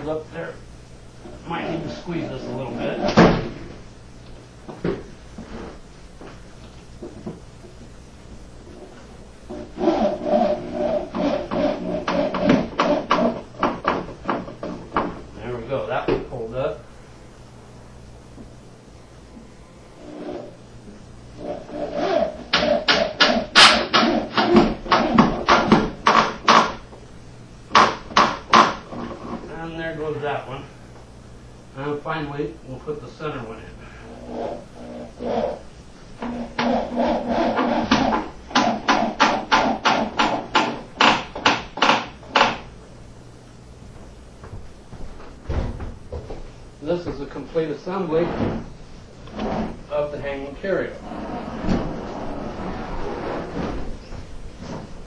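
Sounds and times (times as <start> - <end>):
wooden knocks and clunks: 44.4 - 46.5.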